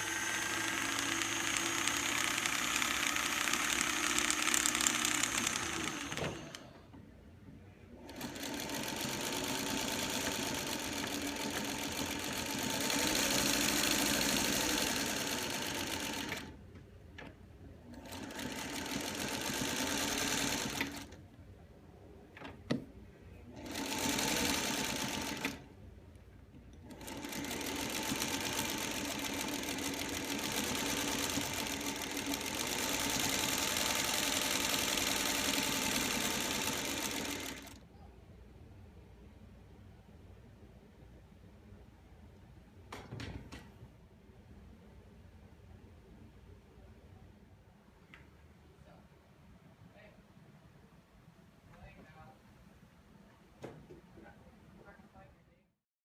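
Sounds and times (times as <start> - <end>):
sewing machine stitching: 0.0 - 6.8, 8.0 - 16.6, 17.9 - 21.2, 23.5 - 25.6, 26.8 - 37.8.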